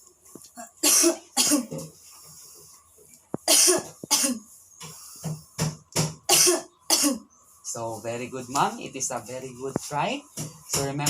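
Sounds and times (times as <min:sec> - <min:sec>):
person coughing: 0:00.6 - 0:01.9, 0:03.4 - 0:04.4, 0:06.3 - 0:07.2.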